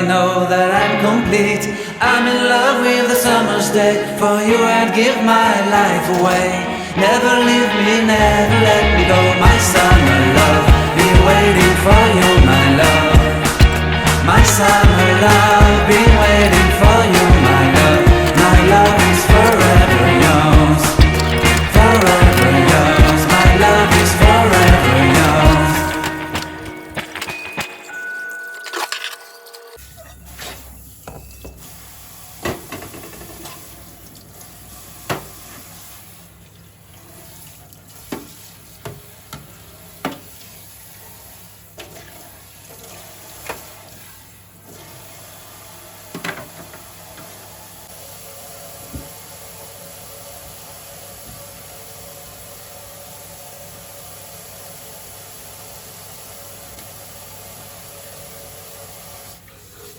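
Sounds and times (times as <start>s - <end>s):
water running: 9.4s - 29.8s
sharp clicks and knocks: 13.4s - 27.9s.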